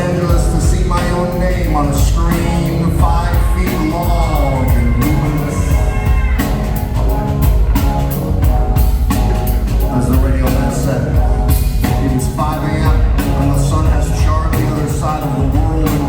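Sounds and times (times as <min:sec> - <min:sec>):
person singing: 0:00.0 - 0:07.2, 0:09.4 - 0:16.0
live rock band playing: 0:00.0 - 0:16.0.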